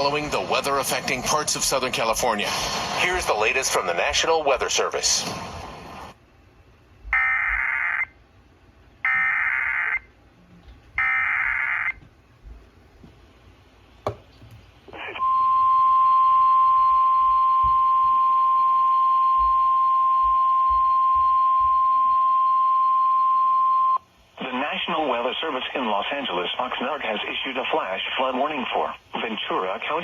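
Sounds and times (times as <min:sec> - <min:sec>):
steady warning tone: 0:07.1 - 0:08.2, 0:09.0 - 0:12.0, 0:14.9 - 0:24.0.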